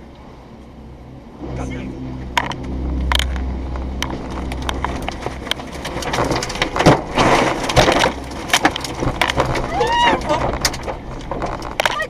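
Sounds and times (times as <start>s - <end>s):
tornado winds: 0.0s - 12.0s
heavy rain hammering a car: 0.8s - 12.0s
debris hitting car body: 5.6s - 12.0s.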